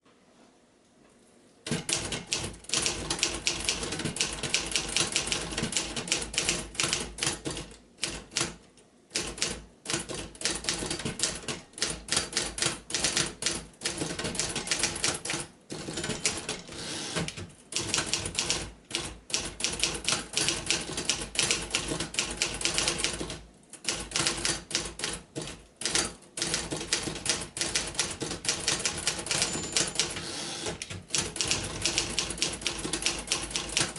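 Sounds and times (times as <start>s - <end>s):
typewriter keystrokes: 1.7s - 33.9s.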